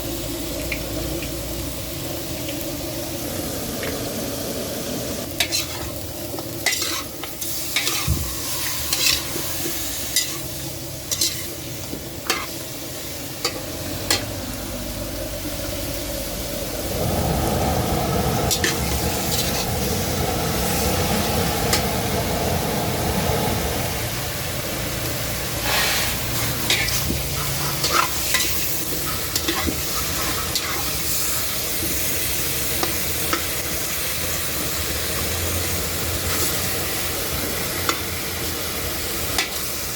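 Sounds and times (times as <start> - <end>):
food sizzling in a frying pan: 0.0 - 39.9
utensil scraping a pan: 7.8 - 9.5.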